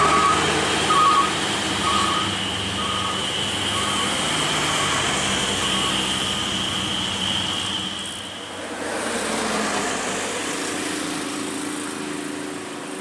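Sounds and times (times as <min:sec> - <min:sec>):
steady high whine: 0:00.0 - 0:08.4
truck diesel engines labouring: 0:00.0 - 0:13.0.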